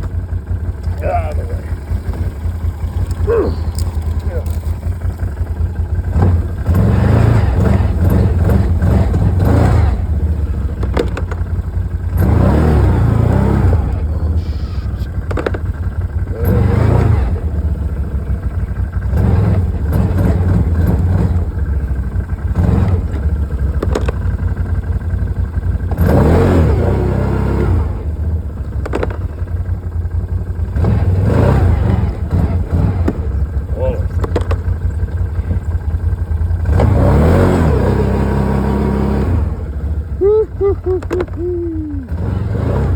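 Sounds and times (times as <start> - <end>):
vehicle engine revving hard: 1.0 - 11.3, 12.0 - 15.5, 16.2 - 18.4, 19.0 - 24.2, 25.8 - 29.2, 30.6 - 34.6, 35.3 - 42.9
sharp clicks or knocks: 10.8 - 11.5, 23.8 - 24.2, 34.2 - 34.7.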